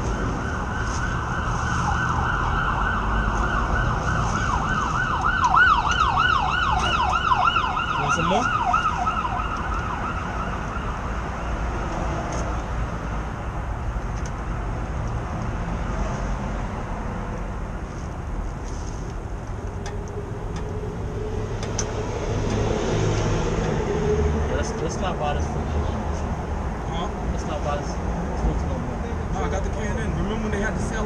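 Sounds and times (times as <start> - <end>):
emergency siren wailing: 0.0 - 12.3, 19.7 - 25.6
street traffic rumble: 0.0 - 31.0.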